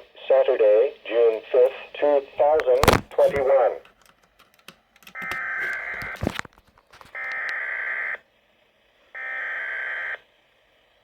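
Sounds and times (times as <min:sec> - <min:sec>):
static crackle: 0:00.2 - 0:03.8, 0:05.2 - 0:07.6.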